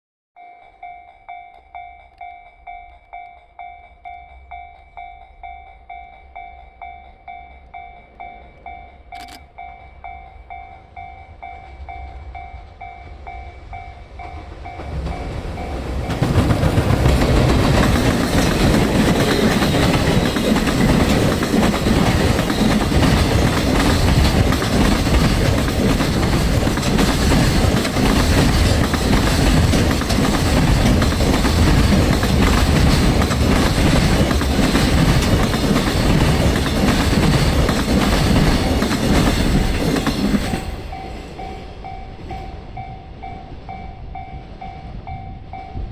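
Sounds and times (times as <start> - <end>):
level crossing warning bell: 0.4 - 45.9
freight train rumble: 0.8 - 45.9
train wheels clattering over rail joints: 14.2 - 41.0.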